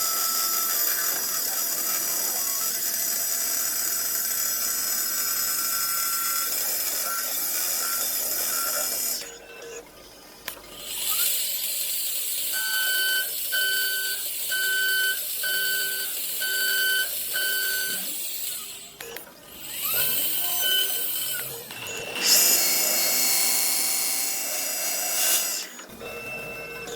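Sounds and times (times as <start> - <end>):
loud machine noise: 17.1 - 26.4.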